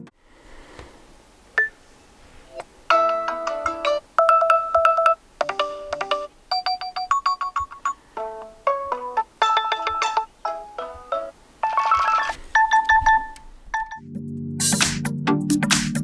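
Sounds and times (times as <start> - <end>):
bright melodic alarm chime: 9.5 - 14.1.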